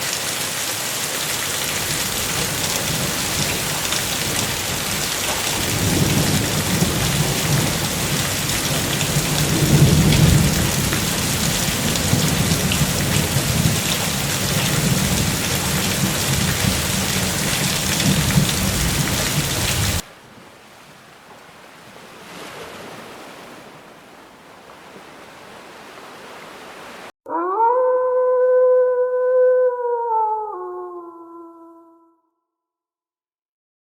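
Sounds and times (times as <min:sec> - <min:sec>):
heavy rain: 0:00.0 - 0:27.1
rolling thunder: 0:02.1 - 0:20.0
long steady howl: 0:27.3 - 0:32.1.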